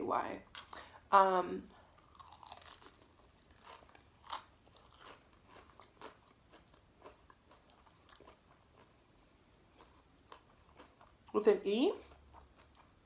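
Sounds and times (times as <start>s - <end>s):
crunchy chewing of food: 1.8s - 11.4s, 12.0s - 13.0s.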